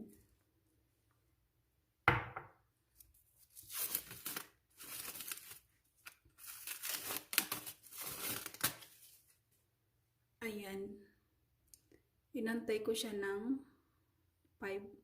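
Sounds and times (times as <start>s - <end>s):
knock: 2.1s - 2.5s
covering crinkling and tearing: 3.4s - 9.3s.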